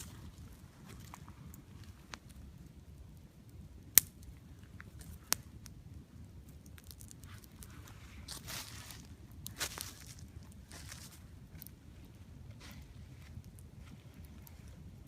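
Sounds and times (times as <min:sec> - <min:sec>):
rustle: 0:00.0 - 0:02.8, 0:06.4 - 0:15.0
campfire crackling: 0:00.0 - 0:15.0
fire popping: 0:00.0 - 0:15.0.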